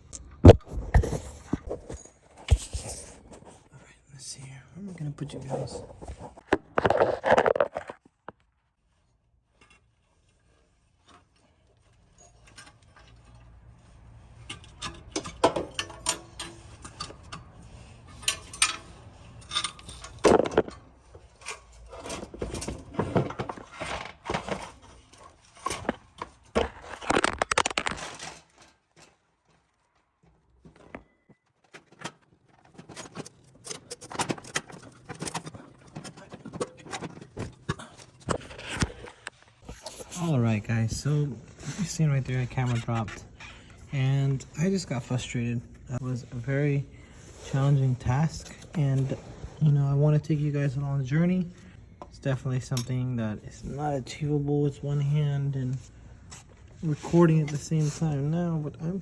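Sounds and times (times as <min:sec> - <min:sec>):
metallic clinks and scrapes: 0:01.0 - 0:03.6, 0:08.8 - 0:29.1, 0:31.8 - 0:49.7.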